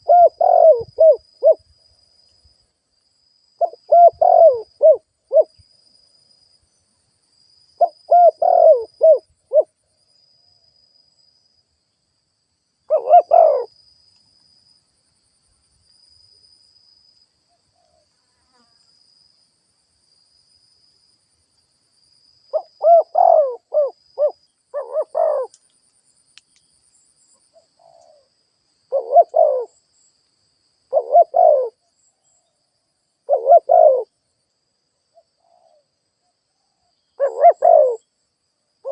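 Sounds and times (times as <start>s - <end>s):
dove cooing: 0.0s - 1.6s, 3.6s - 5.6s, 7.8s - 9.7s, 12.9s - 13.7s, 22.5s - 25.6s, 28.9s - 29.8s, 30.9s - 31.8s, 33.3s - 34.1s, 37.2s - 38.0s.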